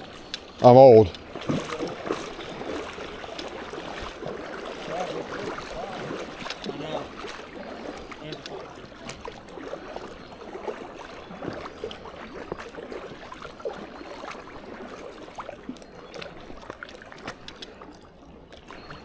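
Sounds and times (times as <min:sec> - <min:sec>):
creek water running: 0:00.0 - 0:19.0
small clicks and crackles: 0:00.2 - 0:01.2, 0:03.2 - 0:03.6, 0:06.2 - 0:06.9, 0:16.2 - 0:18.1.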